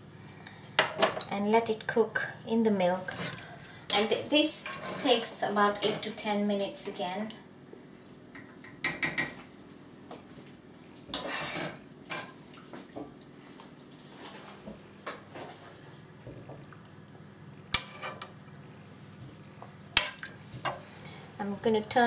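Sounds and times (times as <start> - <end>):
metal spoon scraping pan: 4.5 - 6.2, 11.2 - 11.8, 17.8 - 18.3.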